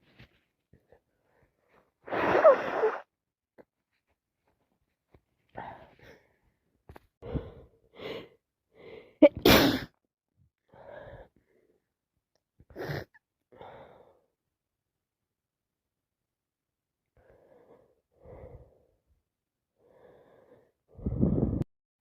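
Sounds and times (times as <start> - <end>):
woman sneezing: 9.2 - 9.9.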